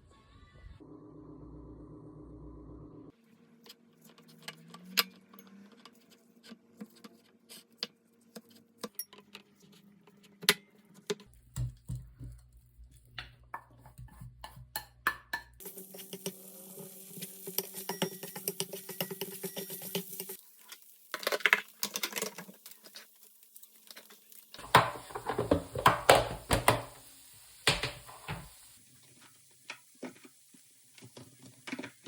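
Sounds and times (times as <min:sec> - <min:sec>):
low hum: 0:00.8 - 0:03.1
dishes and utensils clinking: 0:24.6 - 0:26.9.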